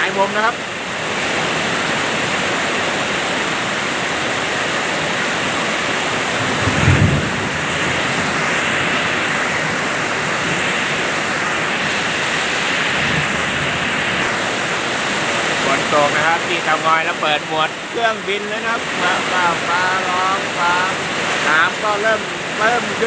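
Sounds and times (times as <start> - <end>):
heavy rain falling: 0.0 - 23.0
low rumble: 6.1 - 15.4.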